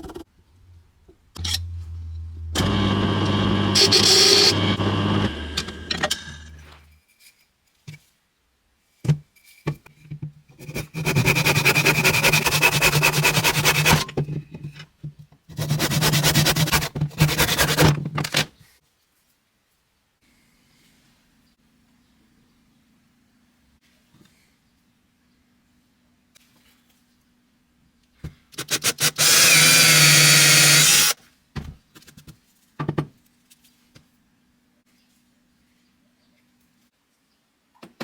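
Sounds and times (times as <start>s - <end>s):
low hum: 0.5s - 6.8s
small power tool whining: 2.6s - 6.6s, 29.0s - 31.2s.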